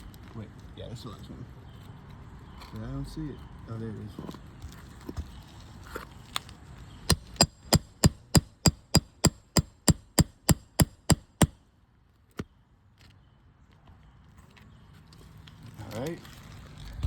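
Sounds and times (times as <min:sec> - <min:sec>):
hammer striking metal nail puller: 0:07.1 - 0:11.6.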